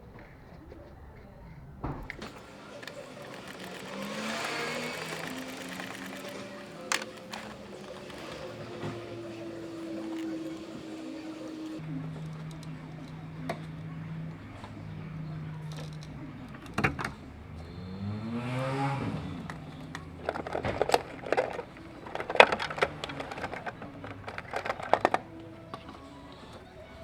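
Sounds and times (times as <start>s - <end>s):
car engine idling and revving: 2.2s - 26.2s
sharp clicks and knocks: 19.4s - 25.9s.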